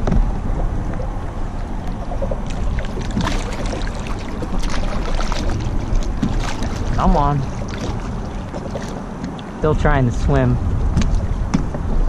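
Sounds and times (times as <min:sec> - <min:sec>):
water splashing against kayak: 0:00.0 - 0:09.7
wind buffeting microphone: 0:00.0 - 0:12.0.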